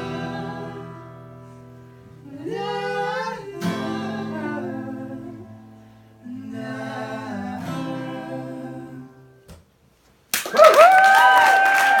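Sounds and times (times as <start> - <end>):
acoustic guitar strumming: 0.0 - 6.1.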